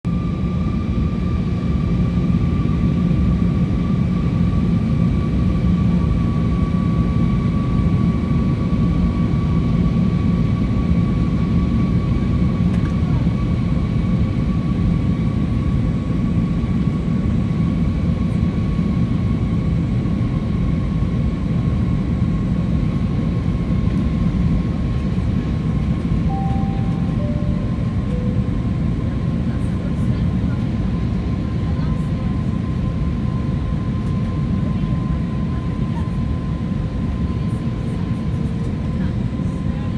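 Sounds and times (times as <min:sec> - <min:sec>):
jet engine rumble and whine: 0:00.1 - 0:39.9
short tone: 0:26.3 - 0:29.2.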